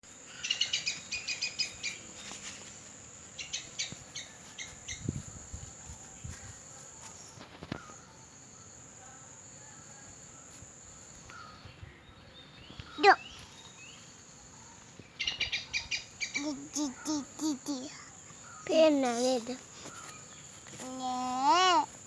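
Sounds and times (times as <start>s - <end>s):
insect drone: 0.1s - 22.0s
bird chirps: 11.2s - 20.6s.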